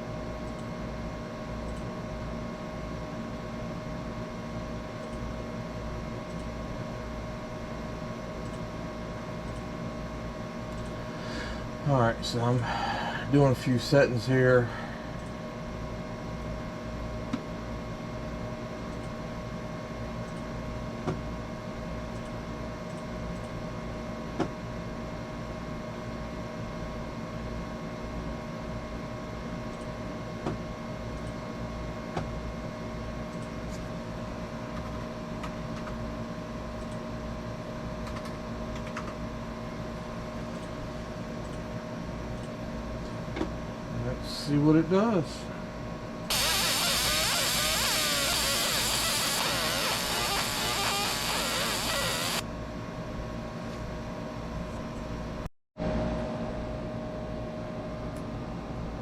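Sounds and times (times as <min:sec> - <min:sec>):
computer mouse clicks: 0:08.4 - 0:08.6, 0:09.5 - 0:09.7.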